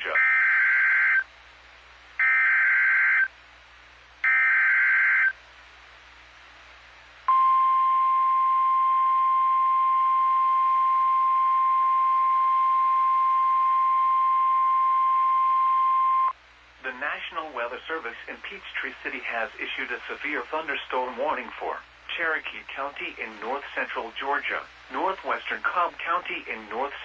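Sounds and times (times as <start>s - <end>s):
steady single-pitch attention tone: 7.3s - 16.3s.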